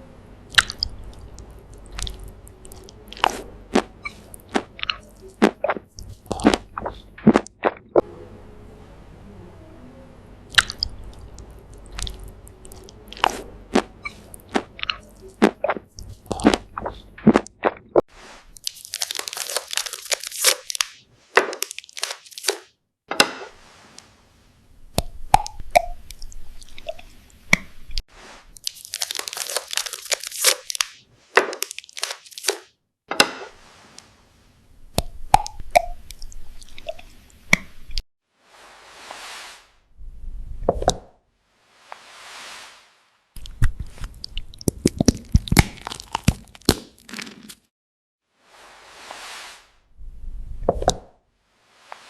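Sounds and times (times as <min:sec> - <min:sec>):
crunchy chewing of food: 0:00.5 - 0:07.5, 0:10.5 - 0:17.8, 0:18.5 - 0:22.6, 0:28.6 - 0:32.7, 0:43.4 - 0:47.7.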